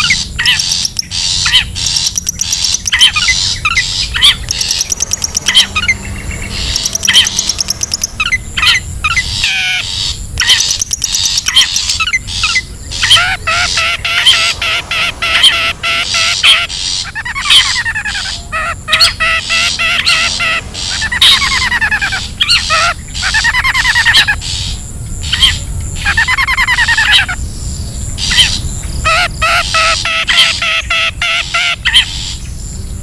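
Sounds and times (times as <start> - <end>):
harsh scratchy bird scolding calls: 0.0 - 27.4, 28.1 - 32.5
bird chirping rapidly: 0.0 - 33.0.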